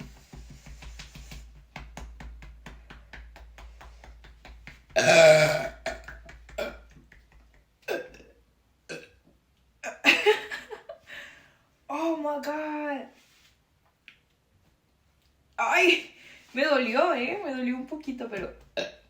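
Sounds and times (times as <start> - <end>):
long loud burp: 5.0 - 6.0, 8.9 - 9.2.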